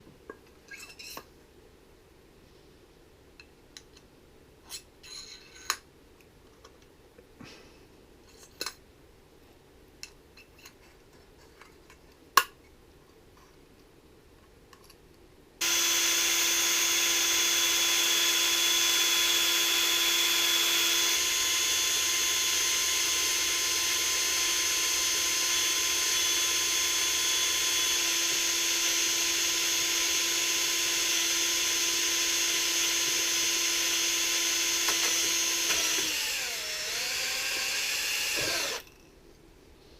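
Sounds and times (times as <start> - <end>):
electric drill whining: 15.6 - 38.9.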